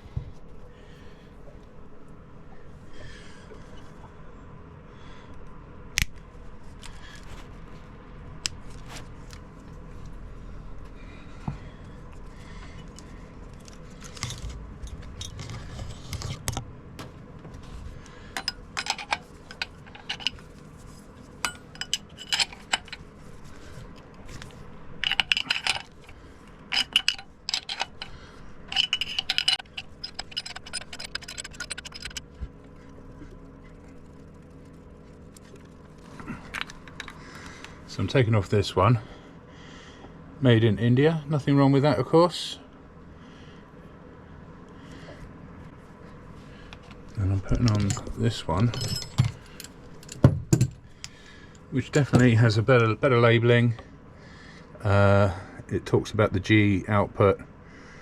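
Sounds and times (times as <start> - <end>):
metal tools clinking on metal: 18.3 - 20.5, 21.4 - 23.1, 25.0 - 32.3, 47.4 - 50.8.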